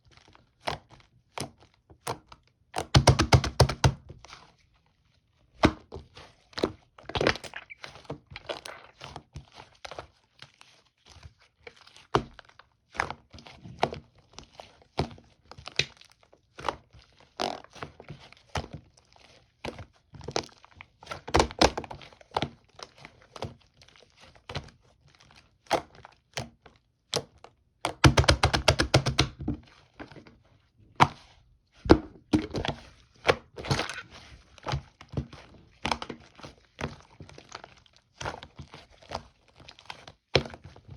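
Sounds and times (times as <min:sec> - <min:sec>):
slime clicking and crackling: 0:07.1 - 0:09.2.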